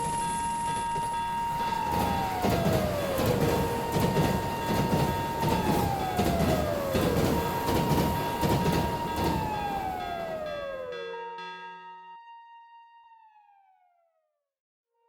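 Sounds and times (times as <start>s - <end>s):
train rumbling and clattering: 0.0s - 11.0s.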